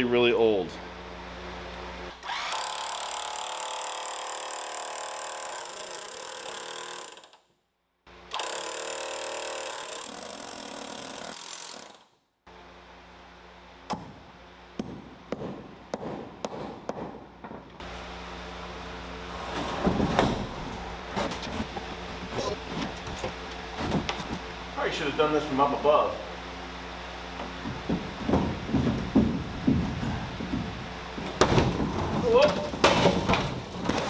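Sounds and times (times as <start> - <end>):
electric hammer drill drilling: 2.1 - 7.4, 8.3 - 12.0.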